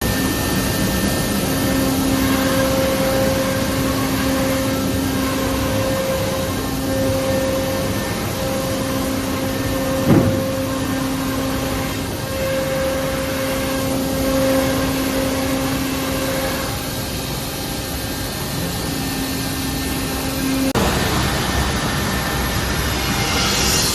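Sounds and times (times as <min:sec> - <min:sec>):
router machine hum and whine: 0:00.0 - 0:23.9.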